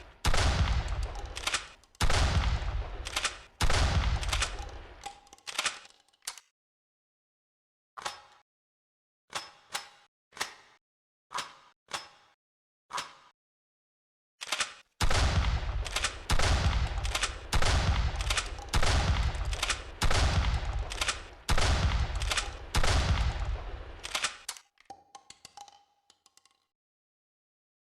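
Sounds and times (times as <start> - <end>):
shotgun shots echoing: 0.0 - 5.0, 15.0 - 24.4
shotgun pump clacks: 0.0 - 6.5, 14.4 - 26.6.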